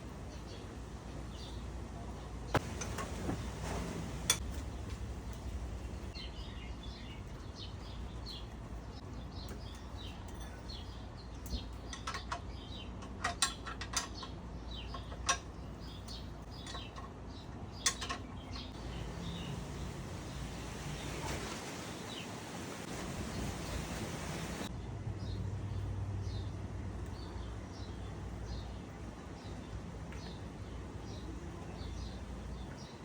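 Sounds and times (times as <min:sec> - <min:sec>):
small birds chirping: 0:00.0 - 0:33.0
sharp metallic clicks and clinks: 0:09.5 - 0:15.5.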